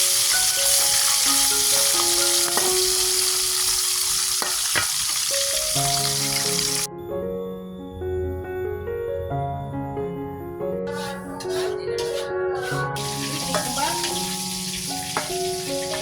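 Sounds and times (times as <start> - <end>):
food sizzling in hot oil: 0.0 - 6.9, 10.9 - 16.0
utensil clicking in pan: 4.4 - 5.4, 10.9 - 16.0.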